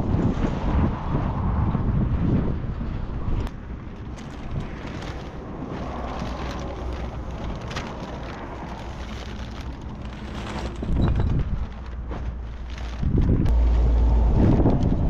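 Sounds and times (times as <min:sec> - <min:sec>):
wind buffeting the microphone: 0:00.0 - 0:15.0
rain falling: 0:04.0 - 0:14.7.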